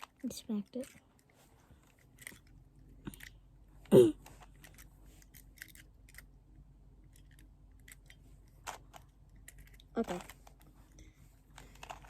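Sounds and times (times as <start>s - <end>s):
puzzle cube clicking and snapping: 4.2s - 6.3s, 7.1s - 10.6s, 11.5s - 12.0s.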